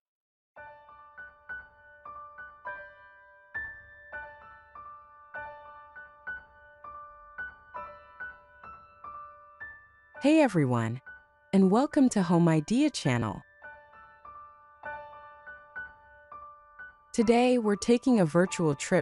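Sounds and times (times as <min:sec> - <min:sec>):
soft slow piano music: 0:00.6 - 0:19.0.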